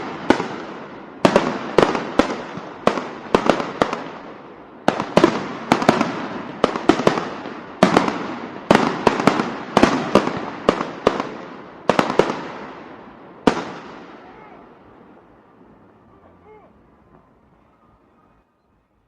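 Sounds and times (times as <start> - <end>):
firecrackers banging: 0.0 - 18.2.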